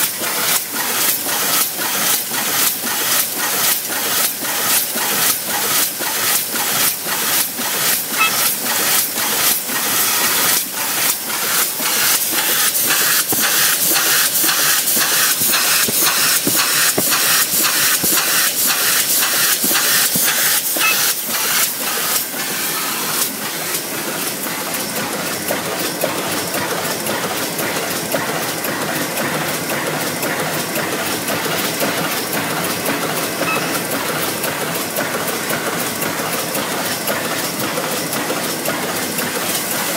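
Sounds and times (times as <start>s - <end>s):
sewing machine clacking: 0.0s - 22.3s.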